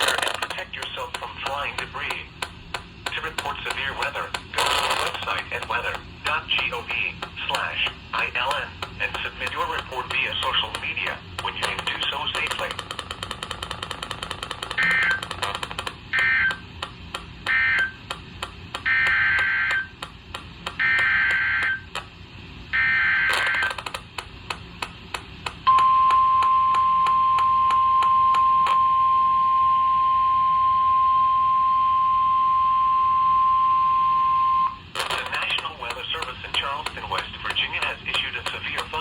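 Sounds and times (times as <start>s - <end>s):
warbling digital data bursts: 14.8s - 15.4s.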